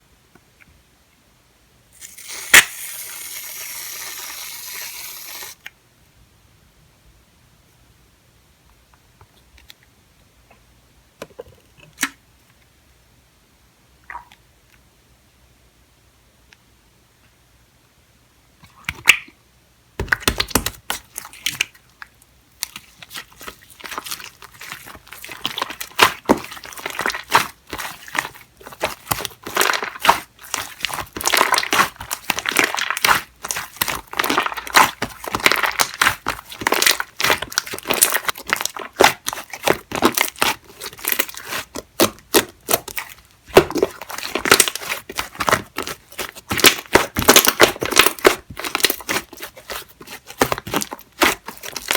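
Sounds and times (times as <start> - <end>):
slime crackling and popping: 22.6 - 51.9.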